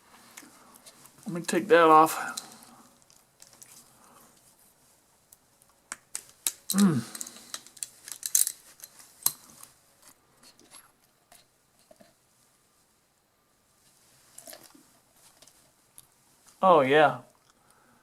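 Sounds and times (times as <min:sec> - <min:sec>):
clicks and clinks of metal parts: 0:06.2 - 0:11.5.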